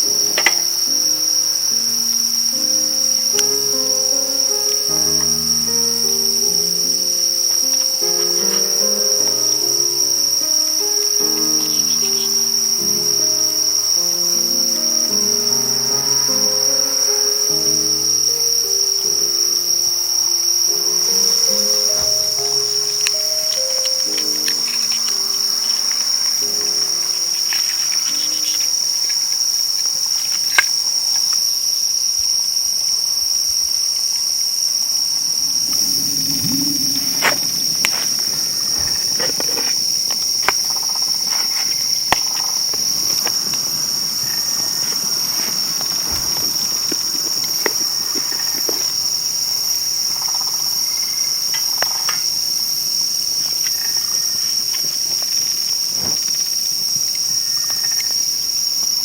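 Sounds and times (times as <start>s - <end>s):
crickets and insects trilling: 0.0s - 59.0s.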